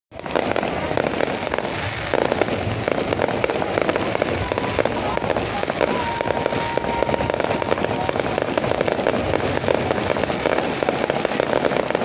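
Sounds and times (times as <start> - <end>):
fireworks crackling: 0.1 - 12.0
thin steady whistle: 3.8 - 8.9.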